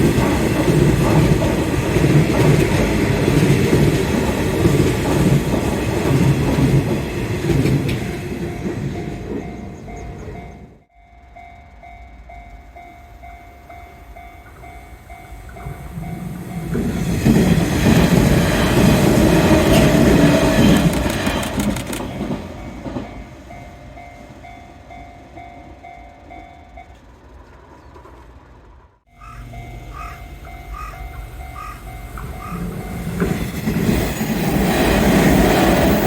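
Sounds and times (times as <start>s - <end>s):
electric train rumbling: 0.0s - 36.0s
level-crossing bell dinging: 8.4s - 21.3s, 22.2s - 27.1s, 29.1s - 36.0s
wheel clicks over rail joints: 19.5s - 23.1s.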